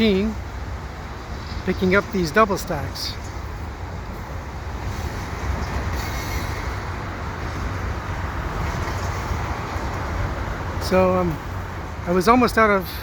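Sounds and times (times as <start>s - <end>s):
freight train rumbling past: 0.0s - 13.0s
high wheel squeal: 4.9s - 7.0s.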